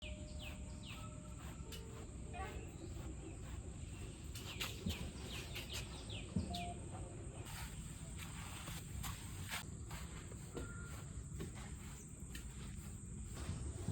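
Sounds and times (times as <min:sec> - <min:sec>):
birds chirping: 0:00.0 - 0:08.3.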